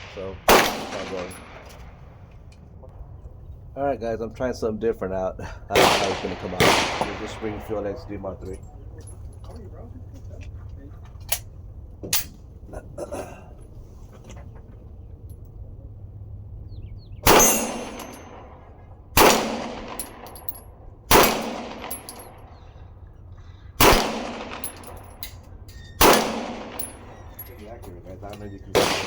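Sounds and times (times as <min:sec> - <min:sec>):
pistol shots hitting steel: 0:00.0 - 0:02.0, 0:05.8 - 0:08.1, 0:17.2 - 0:22.6, 0:23.8 - 0:29.0
steel targets ringing: 0:17.3 - 0:18.6.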